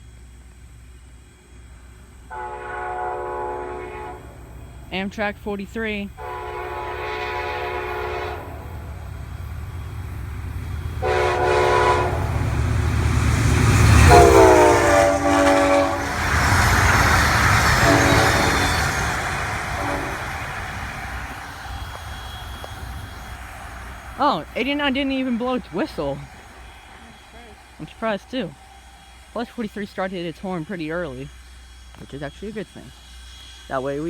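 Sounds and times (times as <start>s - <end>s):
passing train rumble: 0.0s - 34.0s
locomotive horn blasts: 2.3s - 4.6s, 6.2s - 9.3s, 11.0s - 28.4s.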